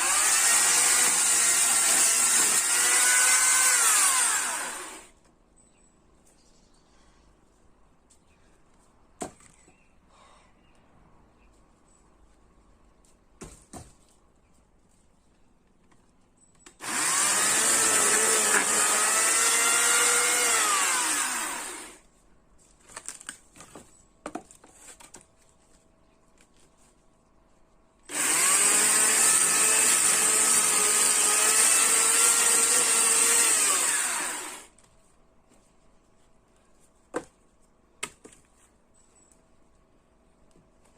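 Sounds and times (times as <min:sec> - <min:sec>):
chainsaw cutting wood: 0:00.0 - 0:05.2, 0:16.8 - 0:22.0, 0:28.1 - 0:34.8.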